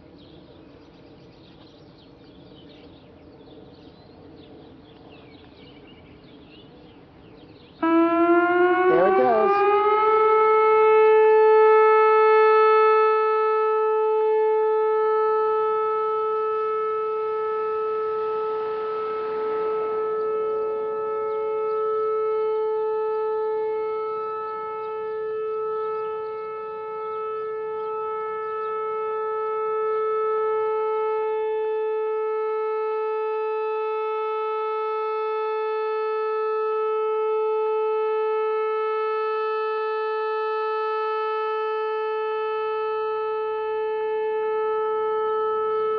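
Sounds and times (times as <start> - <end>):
warning siren steady tone: 0.0 - 45.9.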